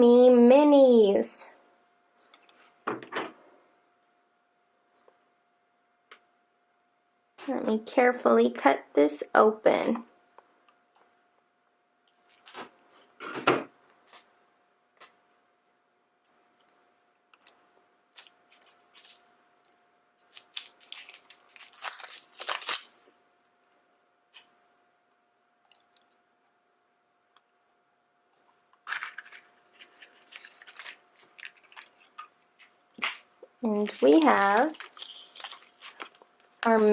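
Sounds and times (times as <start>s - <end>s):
faint steady hum: 0.0s - 36.9s
plastic wrapper rustling: 12.1s - 13.1s, 16.6s - 23.7s, 28.8s - 36.9s
scissors cutting plastic: 28.8s - 36.9s.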